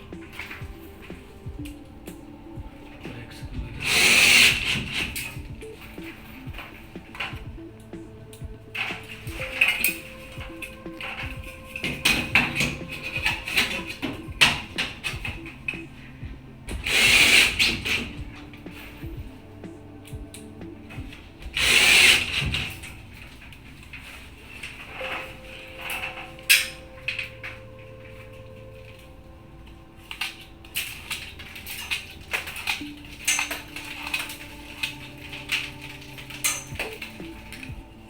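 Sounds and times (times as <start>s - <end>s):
faint background music: 0.0s - 38.0s
power drill driving a screw: 3.8s - 5.4s, 16.7s - 18.2s, 21.6s - 22.8s
clicks and knocks of handling: 30.0s - 38.0s.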